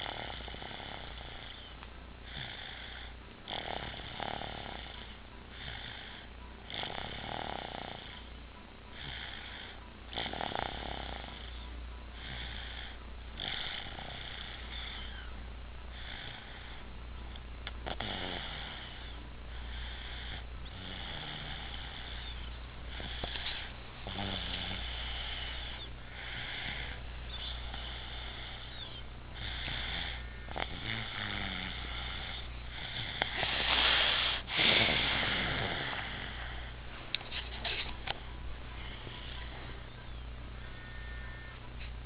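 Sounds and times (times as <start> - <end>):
snoring: 0.0 - 1.7, 2.3 - 8.3, 9.0 - 11.6, 12.2 - 15.2, 16.0 - 16.8, 17.8 - 36.7.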